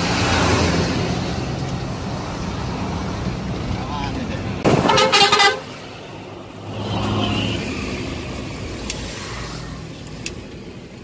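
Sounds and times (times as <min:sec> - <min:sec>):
road noise: 0:00.0 - 0:11.0
vehicle horn blast: 0:04.8 - 0:05.8.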